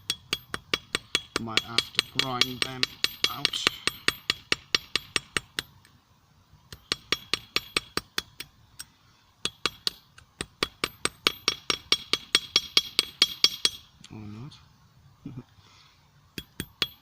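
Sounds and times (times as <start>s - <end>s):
hammer striking steel anvil: 0.1s - 5.7s.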